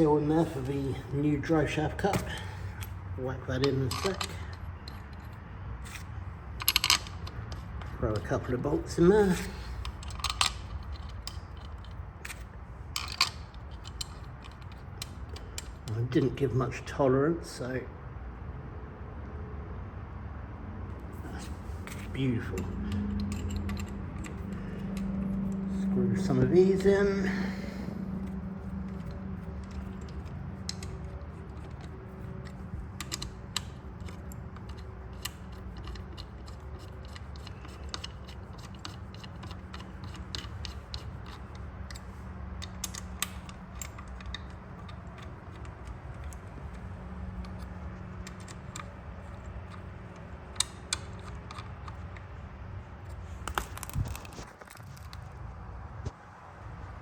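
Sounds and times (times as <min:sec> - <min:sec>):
small metallic clicks of bolts: 0:00.0 - 0:03.0, 0:03.6 - 0:16.3, 0:21.3 - 0:52.4, 0:53.0 - 0:55.3
steady low hum: 0:20.4 - 0:57.0.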